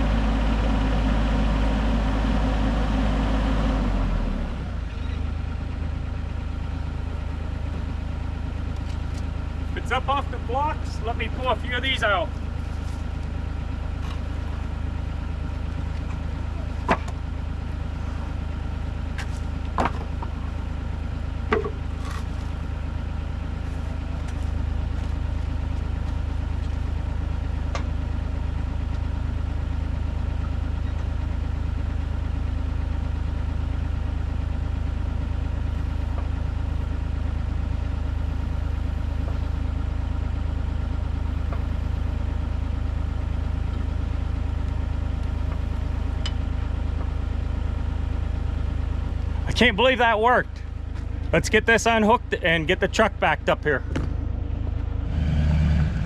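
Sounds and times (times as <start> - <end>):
diesel engine idling: 0.0 - 56.0.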